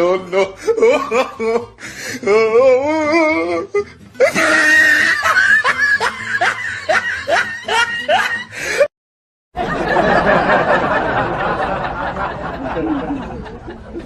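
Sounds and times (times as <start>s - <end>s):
comedy snickering laugh: 4.2s - 8.6s, 9.6s - 14.0s.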